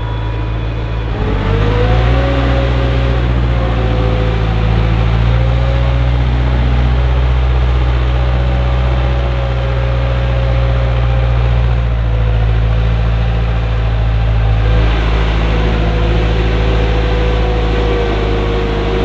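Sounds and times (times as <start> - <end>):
thin wavering whine: 0.0 - 5.9, 14.6 - 19.0
diesel machinery engine drone: 0.0 - 19.0.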